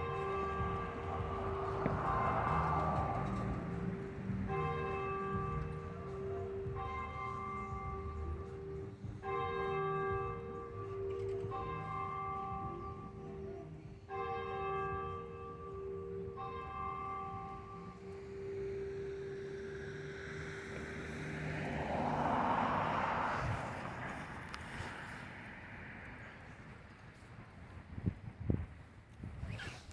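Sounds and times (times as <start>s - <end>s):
church bell tolling: 0.0s - 23.5s.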